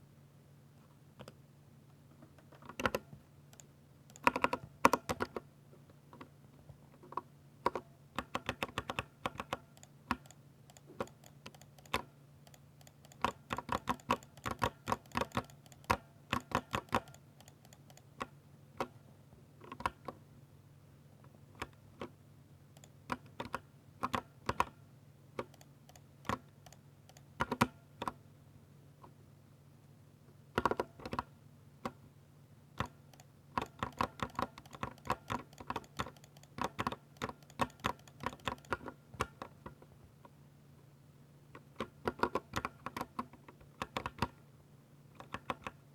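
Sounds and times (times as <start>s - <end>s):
mechanical keyboard key clacks: 8.2s - 18.1s, 32.8s - 38.9s.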